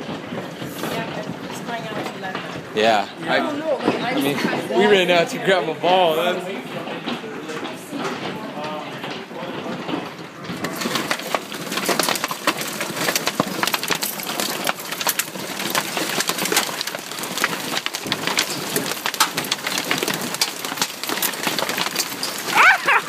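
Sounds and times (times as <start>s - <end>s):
hailstones clattering: 0.0s - 23.0s.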